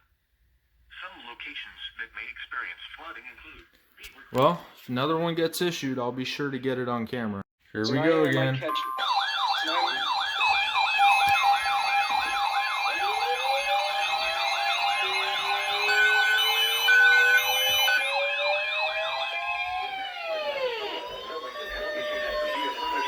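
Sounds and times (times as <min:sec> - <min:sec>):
siren climbing in pitch: 0:08.6 - 0:23.0
warbling electronic siren: 0:08.7 - 0:23.0.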